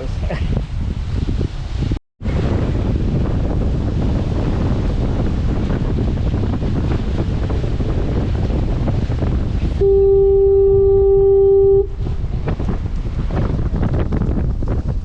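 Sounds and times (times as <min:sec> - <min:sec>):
wind buffeting microphone: 0:00.0 - 0:15.0
foghorn blast: 0:09.8 - 0:12.1.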